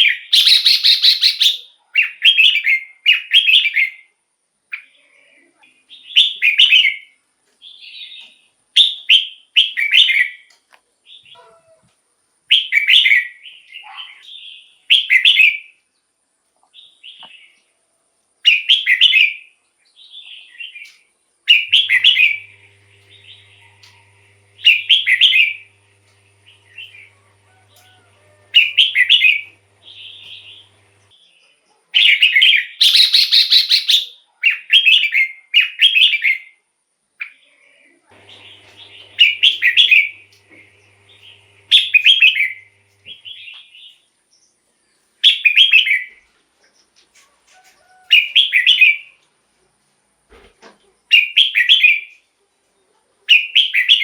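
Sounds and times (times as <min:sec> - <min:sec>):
bird singing warbling phrases: 0:00.1 - 0:03.7, 0:21.5 - 0:31.1, 0:32.0 - 0:36.3, 0:38.3 - 0:43.7.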